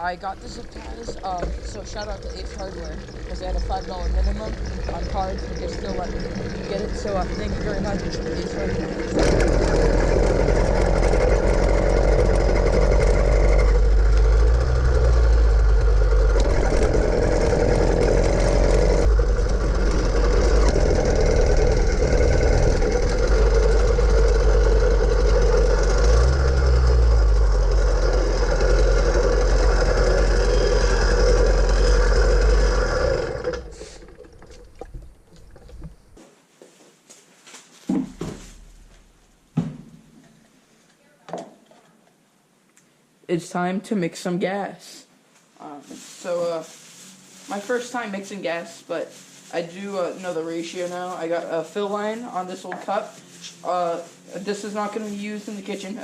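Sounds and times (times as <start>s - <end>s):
two-stroke engine running: 0.0s - 36.0s.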